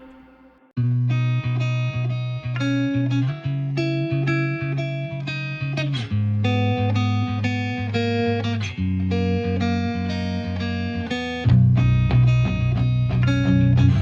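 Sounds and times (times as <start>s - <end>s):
plucked guitar melody: 0.0s - 14.0s
bass line: 6.1s - 14.0s.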